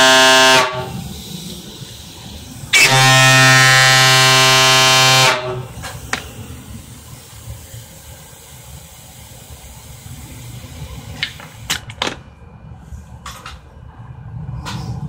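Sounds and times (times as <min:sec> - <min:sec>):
low buzzy fog horn blast: 0:00.0 - 0:01.2, 0:02.7 - 0:05.9.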